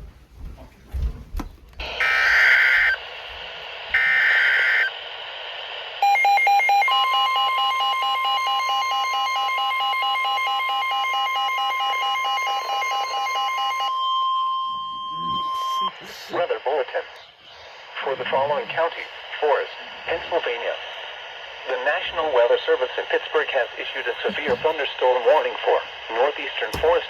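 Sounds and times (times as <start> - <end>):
steady warning alarm tone: 1.8 - 3.0, 4.0 - 5.0, 6.0 - 16.0
radio static: 1.8 - 8.0, 15.0 - 27.0
rapid electronic alarm beeps: 2.0 - 3.0, 4.0 - 5.0, 6.0 - 16.0
warbling data bursts: 3.9 - 5.0.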